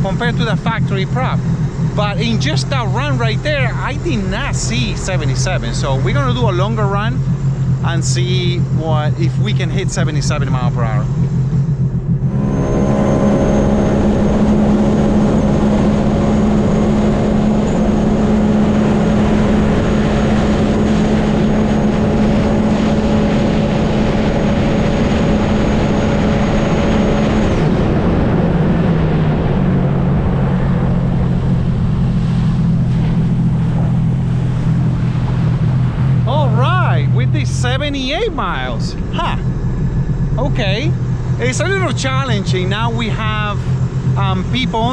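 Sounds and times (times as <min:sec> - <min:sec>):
rushing noise: 0:00.0 - 0:44.9
watercraft engine at full throttle: 0:00.0 - 0:44.9.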